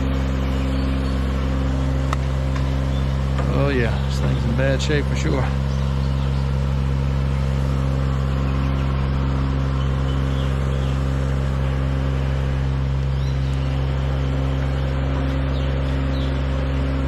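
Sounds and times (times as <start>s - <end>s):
engine running steadily: 0.0s - 17.0s.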